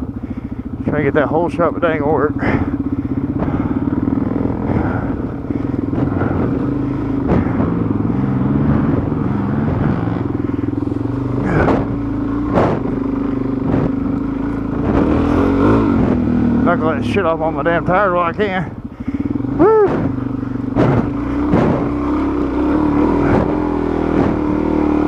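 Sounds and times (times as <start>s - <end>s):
motorcycle engine running: 0.0s - 25.0s
sharp knocks: 11.4s - 16.3s, 19.8s - 22.2s, 23.1s - 24.5s.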